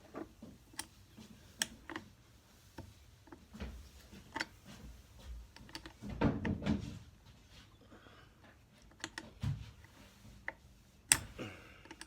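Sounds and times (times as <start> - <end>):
parts clicking on workbench: 10.4 - 12.0.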